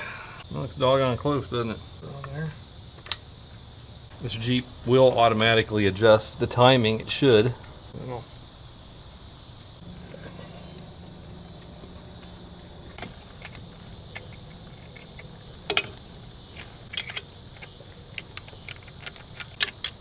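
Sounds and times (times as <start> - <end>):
metal tools clinking: 9.8 - 20.0.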